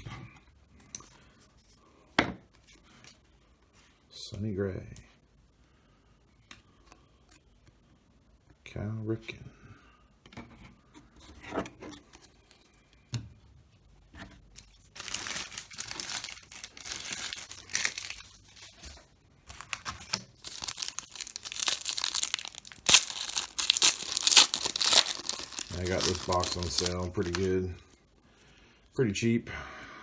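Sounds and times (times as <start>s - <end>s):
wrappers tearing and crinkling: 14.6s - 27.6s.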